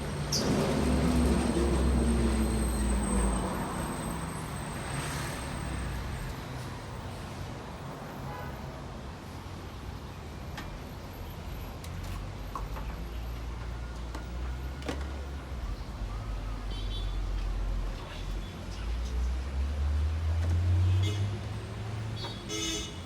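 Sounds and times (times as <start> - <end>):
vehicle engine passing close: 0.0 - 5.8
road traffic noise: 0.0 - 23.0.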